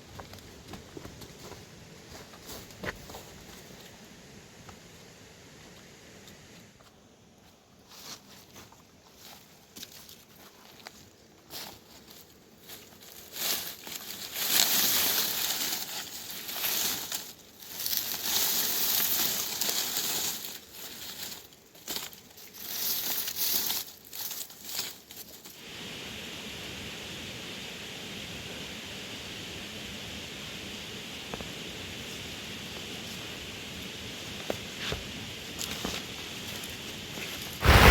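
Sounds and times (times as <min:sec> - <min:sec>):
rustling and crinkling: 0:00.0 - 0:04.1, 0:06.3 - 0:25.6, 0:34.2 - 0:37.9
steady hiss: 0:00.0 - 0:37.9.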